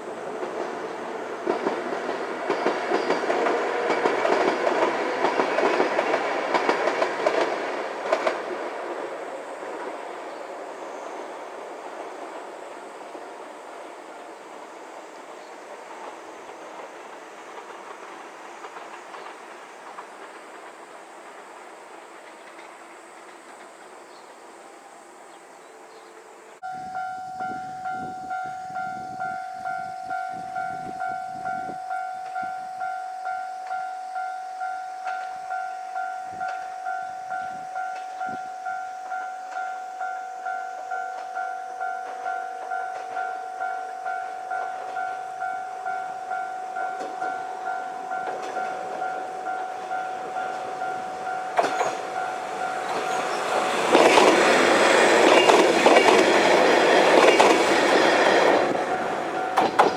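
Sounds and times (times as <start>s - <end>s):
approaching train: 0.0s - 59.9s
level crossing warning bell: 26.6s - 59.9s.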